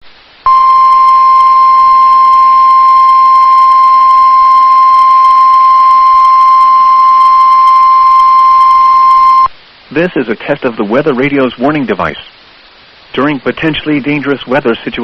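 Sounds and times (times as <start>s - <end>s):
steady warning alarm beep: 0.5s - 9.5s.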